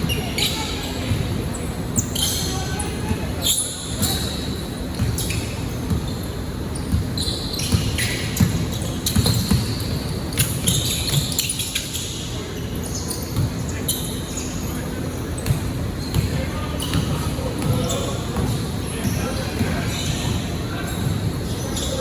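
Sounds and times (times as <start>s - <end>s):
players' voices echoing: 0.0s - 10.6s, 12.0s - 22.0s
shoe squeaks: 0.0s - 22.0s
basketball bouncing on hardwood: 7.7s - 9.8s.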